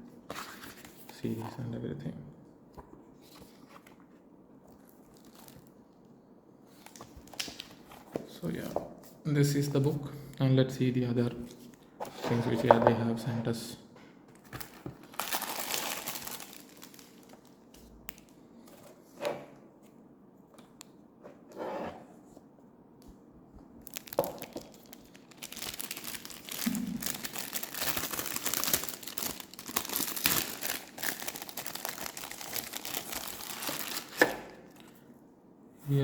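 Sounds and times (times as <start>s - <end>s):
packaging crinkling: 5.1s - 5.7s, 14.4s - 18.4s, 23.8s - 34.6s
wrapping tearing: 15.0s - 18.3s, 23.8s - 34.4s.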